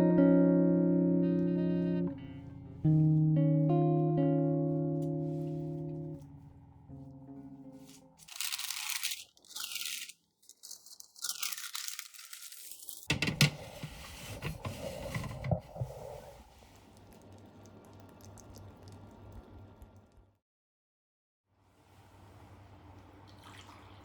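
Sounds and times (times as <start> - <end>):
crinkling and tearing: 7.8 - 13.1
knocks: 13.1 - 13.7.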